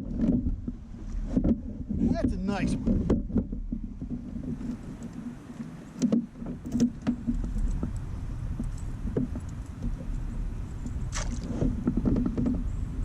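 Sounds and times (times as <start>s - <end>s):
fish and lure rattling: 3.3s - 12.7s.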